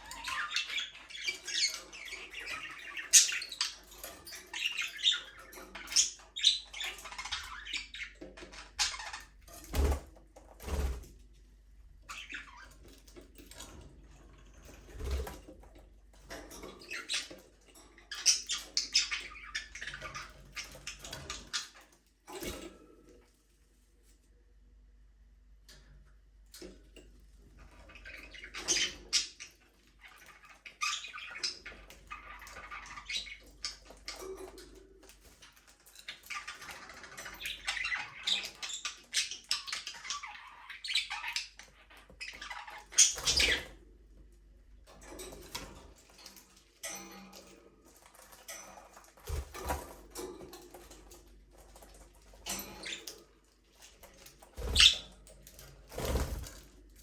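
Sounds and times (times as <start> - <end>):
budgerigars chirping and chattering: 0.0 - 9.9, 18.0 - 21.9, 27.8 - 34.6, 35.4 - 43.8, 54.0 - 55.2.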